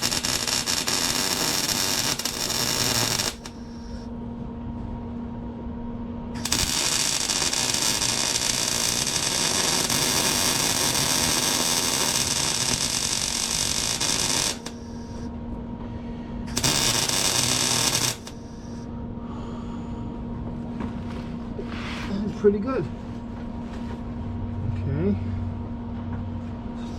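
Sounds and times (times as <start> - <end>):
welding arc crackling sizzle: 0.0 - 4.0, 6.4 - 15.3, 16.5 - 18.8
low steady hum: 0.0 - 26.9.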